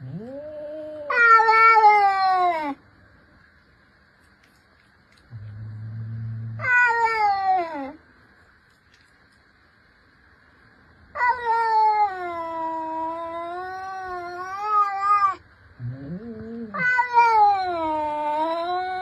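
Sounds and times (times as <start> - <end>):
cat yowling: 0.1 - 2.8, 6.5 - 8.0, 11.2 - 15.4, 16.0 - 19.0.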